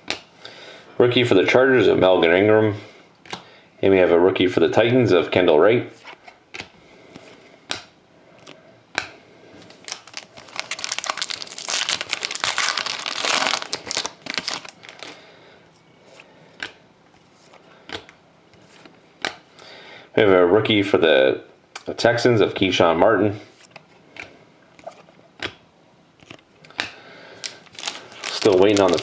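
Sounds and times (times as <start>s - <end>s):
wrapper crinkling and tearing: 9.7s - 15.2s, 27.4s - 29.0s
cards clicking and tapping: 18.8s - 19.4s.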